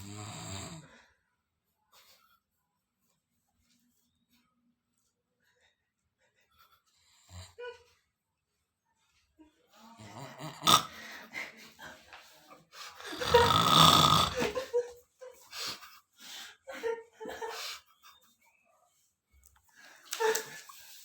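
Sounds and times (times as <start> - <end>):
person snoring: 0.0 - 0.9, 10.0 - 11.0, 13.1 - 14.6.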